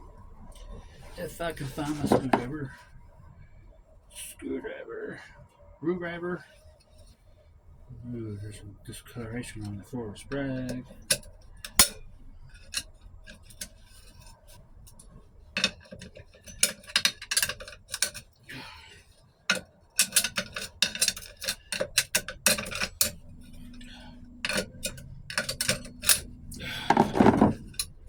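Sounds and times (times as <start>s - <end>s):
steel parts clinking: 0.5s - 2.8s, 9.4s - 28.0s
screwdriver taps: 24.4s - 27.9s.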